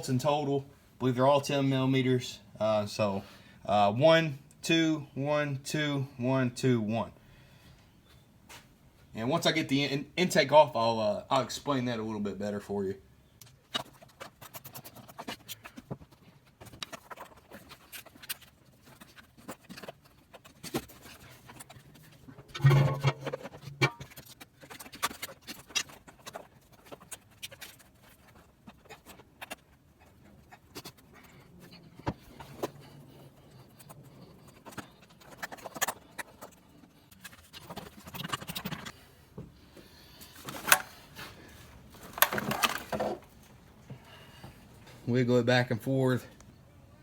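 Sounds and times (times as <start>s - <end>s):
metal tools and parts clattering: 22.5s - 24.1s, 42.0s - 43.3s.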